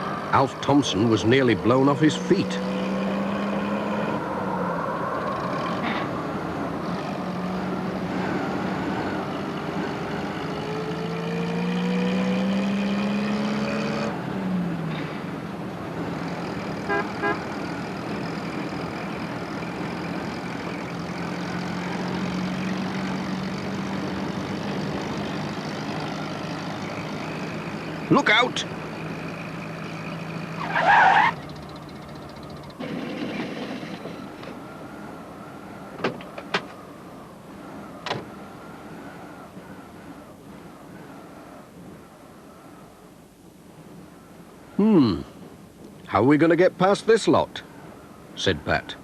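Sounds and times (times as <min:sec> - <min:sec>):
howling wind: 0:03.4 - 0:11.2, 0:31.5 - 0:46.5, 0:47.2 - 0:49.0
van engine running: 0:14.1 - 0:46.0.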